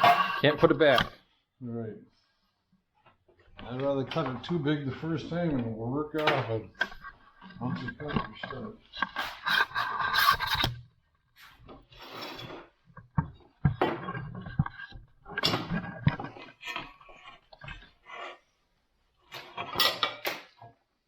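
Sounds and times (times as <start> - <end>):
hand tools scraping sheet metal: 0.0 - 1.2, 3.6 - 10.8, 11.4 - 18.5.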